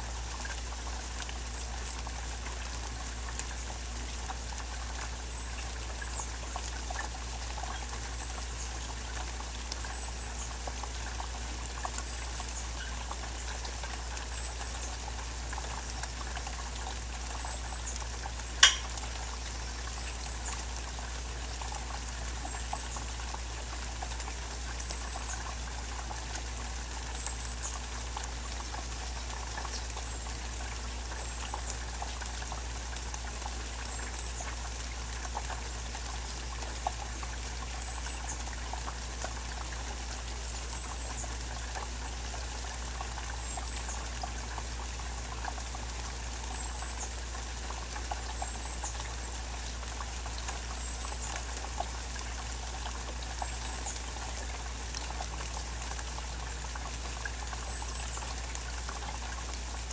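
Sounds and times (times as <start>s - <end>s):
rain falling and dripping: 0.0s - 59.9s
faint high chirp: 18.6s - 18.9s.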